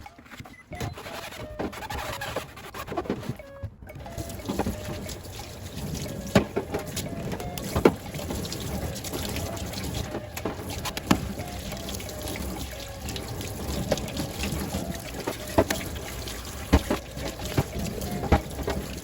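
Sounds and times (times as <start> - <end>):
water running into a sink: 4.0 - 19.0.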